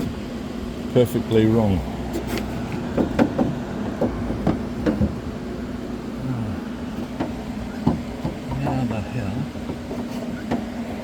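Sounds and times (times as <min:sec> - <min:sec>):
knocks and clicks inside car door: 0:02.8 - 0:05.4, 0:07.0 - 0:10.9.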